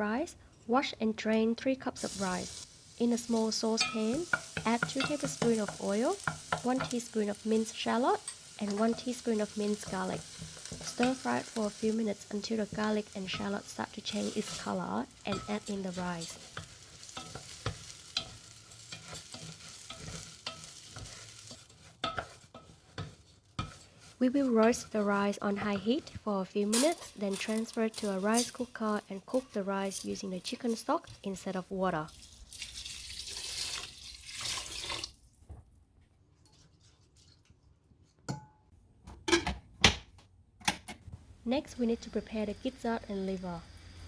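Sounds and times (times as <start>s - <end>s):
light sizzle: 0.0s - 35.3s, 41.4s - 44.0s
kitchen water running: 2.0s - 18.2s, 32.0s - 35.2s
utensil scraping and knocking pan: 3.8s - 7.0s, 12.7s - 28.7s
kitchenware knocks and clicks: 39.1s - 41.0s.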